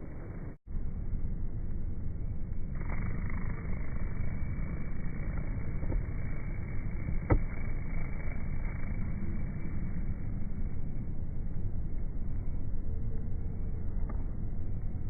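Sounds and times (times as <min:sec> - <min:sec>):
slowed bee buzzing hum: 0:02.7 - 0:10.5.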